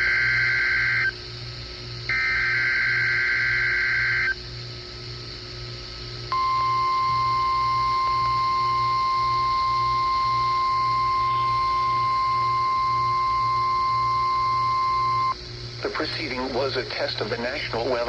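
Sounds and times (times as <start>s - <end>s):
steady warning alarm tone: 0.0s - 1.2s, 2.0s - 4.4s, 6.3s - 15.4s.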